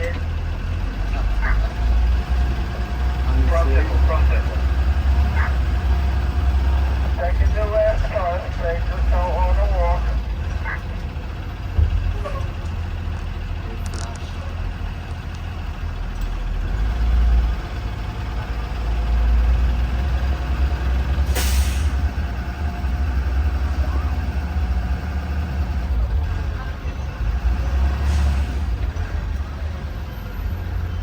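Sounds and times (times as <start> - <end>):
bus engine rumble: 0.0 - 31.0
air brake hiss: 21.3 - 22.0.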